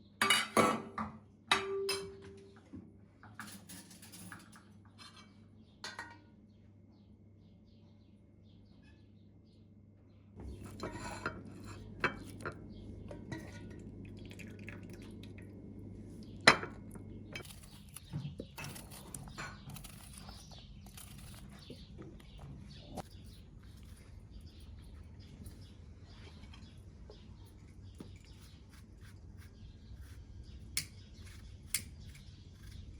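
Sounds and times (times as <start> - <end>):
cutlery and dishes clinking: 3.4 - 6.2, 10.5 - 13.9.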